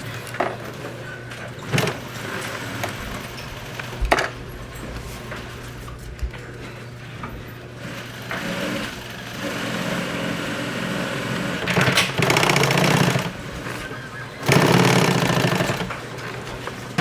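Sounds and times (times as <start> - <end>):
sewing machine stitching: 1.6 - 4.0, 7.8 - 17.0.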